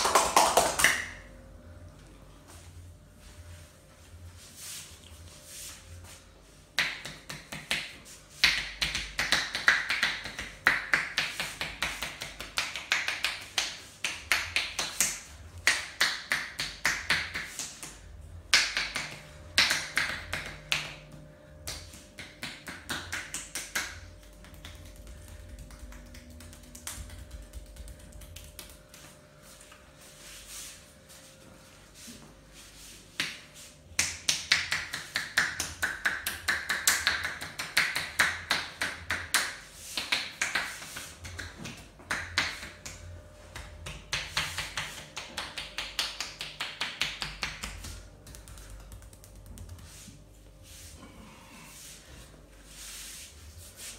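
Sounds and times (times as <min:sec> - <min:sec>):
hands slapping on body: 0:06.8 - 0:29.2, 0:33.1 - 0:50.2.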